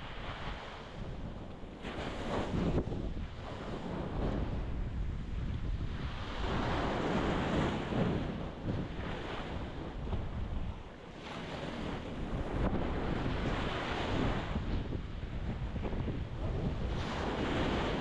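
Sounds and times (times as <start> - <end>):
surf breaking on rocky shore: 1.8 - 10.6.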